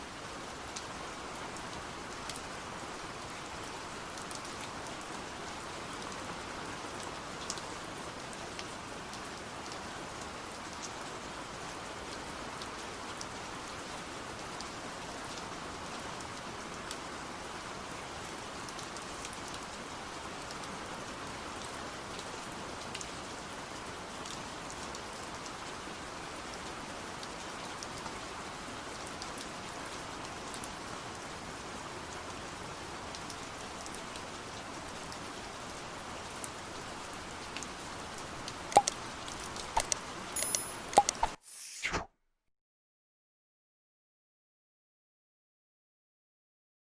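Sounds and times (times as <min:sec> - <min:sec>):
steady rain hiss: 0:00.0 - 0:41.7
raindrops ticking: 0:38.1 - 0:41.4.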